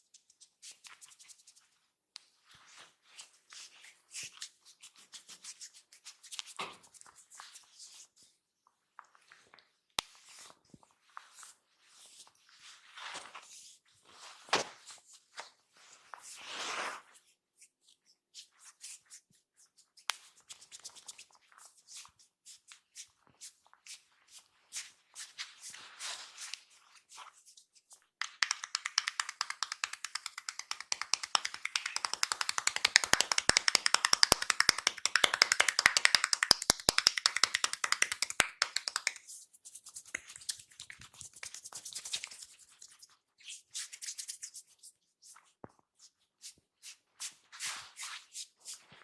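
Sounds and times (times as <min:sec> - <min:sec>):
hands tapping rapidly: 0:28.2 - 0:39.2
hands rubbing: 0:28.2 - 0:45.5.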